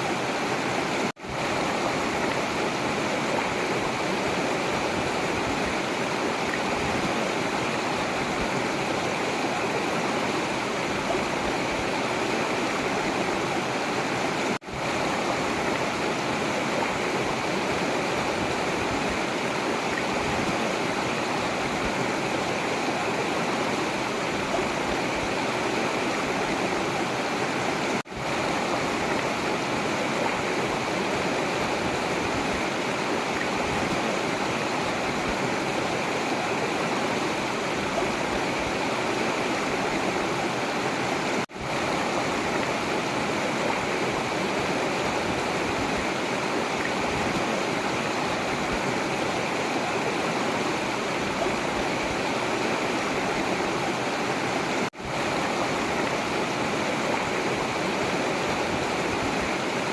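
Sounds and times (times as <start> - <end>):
river water rushing: 0.0 - 59.9.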